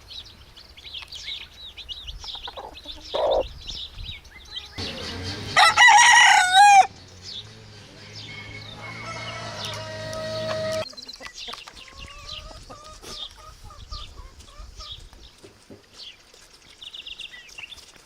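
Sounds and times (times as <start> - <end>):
chicken clucks and chirps: 0.8 - 16.2
rooster crowing: 4.8 - 7.0, 7.9 - 10.8.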